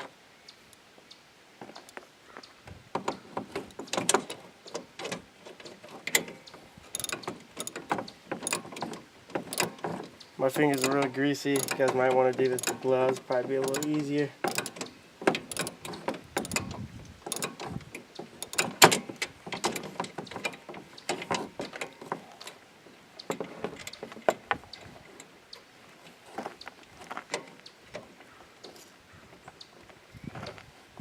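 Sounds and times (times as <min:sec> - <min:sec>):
metallic clicks of hand tools: 0:03.0 - 0:22.6.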